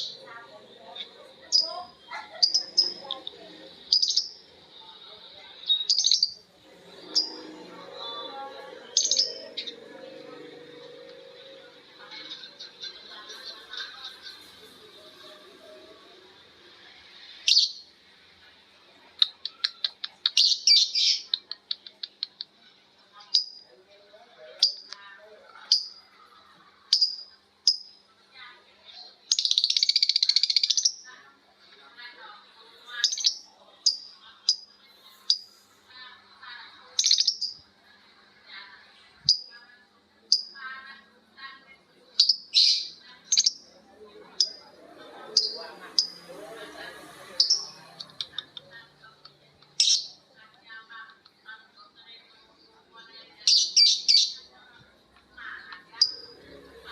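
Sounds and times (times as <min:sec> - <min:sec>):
lovebirds chirping: 0:00.0 - 0:16.0, 0:16.8 - 0:17.9, 0:26.9 - 0:28.0, 0:29.2 - 0:31.2, 0:32.8 - 0:35.5, 0:36.9 - 0:37.6, 0:42.2 - 0:50.3, 0:53.4 - 0:54.5, 0:55.4 - 0:56.9
lovebird chattering chirps: 0:01.0 - 0:04.5, 0:05.6 - 0:06.4, 0:08.8 - 0:09.8, 0:17.4 - 0:17.8, 0:26.9 - 0:27.9, 0:29.3 - 0:31.1, 0:32.9 - 0:34.7, 0:37.0 - 0:37.6, 0:44.4 - 0:44.6, 0:45.4 - 0:46.3, 0:47.3 - 0:48.5, 0:49.8 - 0:50.2, 0:56.0 - 0:56.3.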